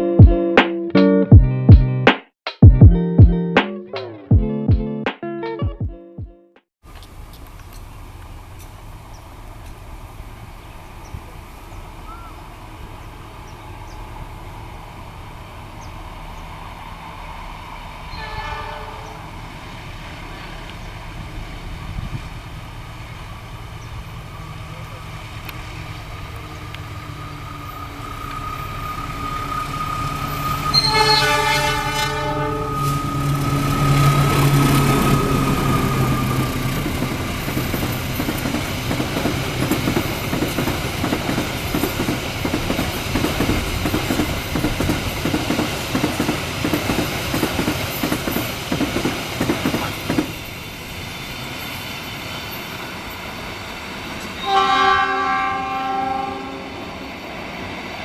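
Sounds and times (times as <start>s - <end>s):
locomotive engine drone: 6.9s - 58.0s
train horn: 18.0s - 19.5s, 27.2s - 36.7s, 54.4s - 57.1s
train wheels clickety-clack: 33.9s - 50.6s.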